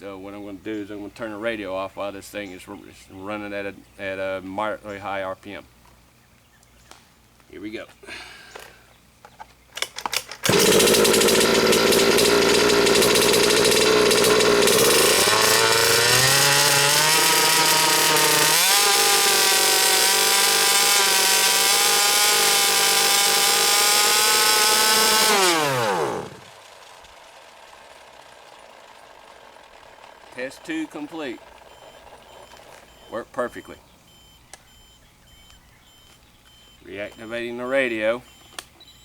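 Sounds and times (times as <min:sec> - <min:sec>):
two-stroke engine revving: 0:10.4 - 0:26.6.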